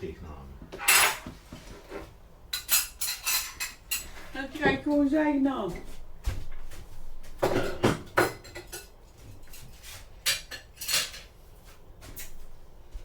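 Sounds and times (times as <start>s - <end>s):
cutlery clinking against dishes: 0.8s - 1.4s, 2.5s - 4.8s, 7.4s - 11.4s.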